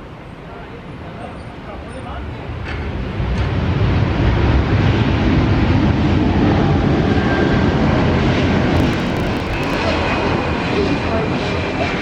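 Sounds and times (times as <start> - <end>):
jet engines roaring: 8.8 - 9.9.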